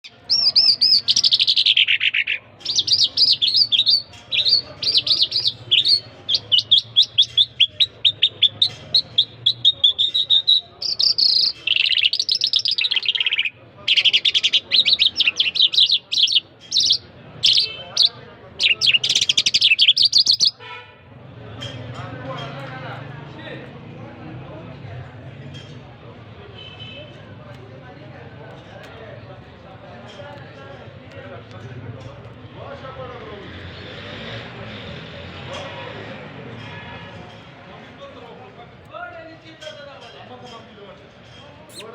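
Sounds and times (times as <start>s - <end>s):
songbird trilling song: 0.0s - 20.6s, 41.7s - 41.9s.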